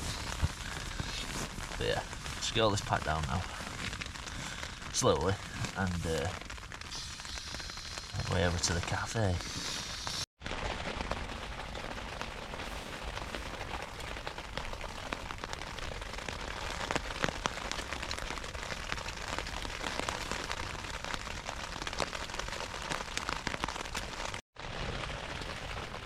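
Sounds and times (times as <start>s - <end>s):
raindrops striking close by: 0.0s - 26.0s
steady rain falling: 0.0s - 26.0s.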